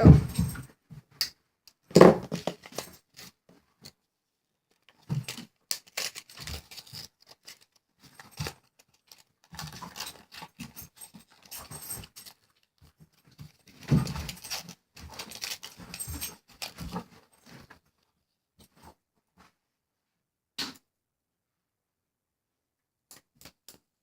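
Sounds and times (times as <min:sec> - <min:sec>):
plastic packaging crinkling: 0:05.7 - 0:07.8.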